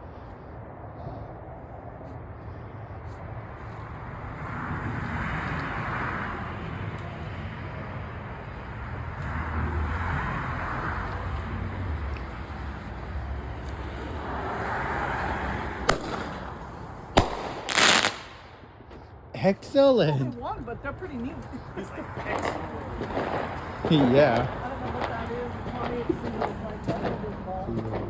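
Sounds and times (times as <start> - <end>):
firework hissing: 10.6 - 18.8, 22.0 - 26.5
firework cracks: 10.6 - 19.1, 22.1 - 27.2.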